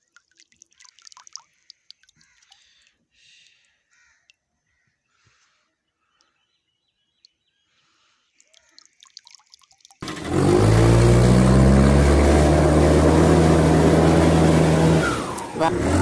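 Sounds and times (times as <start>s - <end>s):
faint bird chirps: 1.5s - 9.3s
vehicle engine starting and running: 10.0s - 16.0s.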